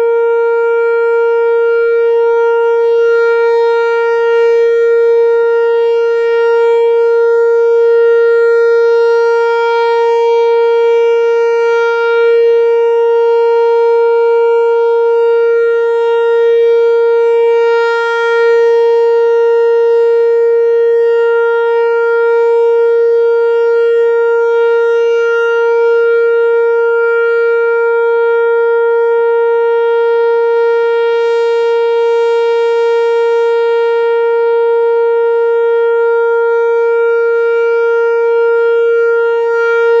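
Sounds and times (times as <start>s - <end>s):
warning siren steady tone: 0.0s - 40.0s.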